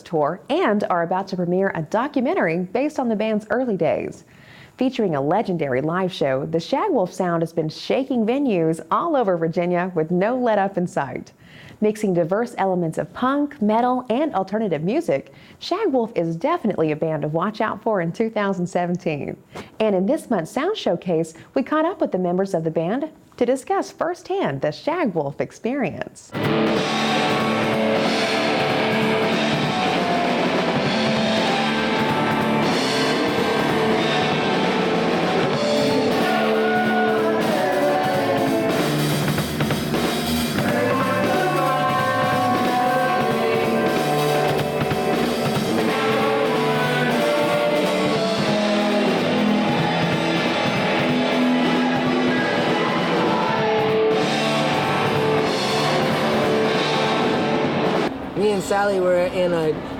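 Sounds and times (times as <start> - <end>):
rock band playing: 26.3 - 58.7.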